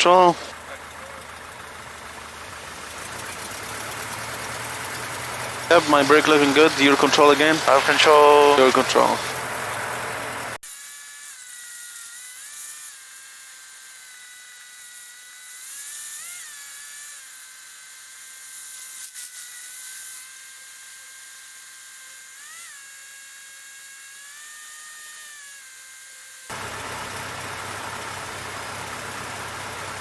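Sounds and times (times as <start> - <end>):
high-pitched electrical whine: 2.5 - 10.6.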